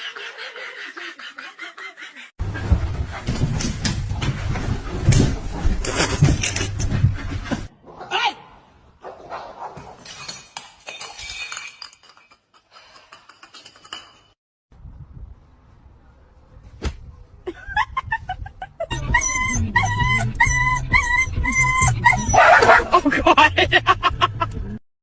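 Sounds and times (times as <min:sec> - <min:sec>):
dog whimpering and yipping: 0:18.9 - 0:22.8.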